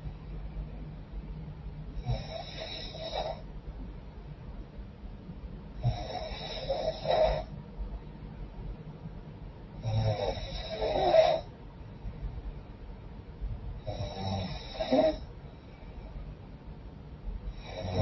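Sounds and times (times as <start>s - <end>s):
woman snoring: 2.0s - 3.4s, 5.8s - 7.5s, 9.8s - 11.5s, 13.9s - 15.2s, 17.6s - 18.0s.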